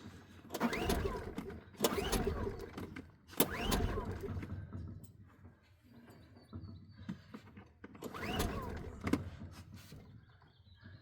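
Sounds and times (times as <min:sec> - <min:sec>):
engine cranking whir: 0:00.5 - 0:04.4, 0:08.0 - 0:09.2
generator recoil starter pulls: 0:00.5 - 0:04.5, 0:07.9 - 0:09.3.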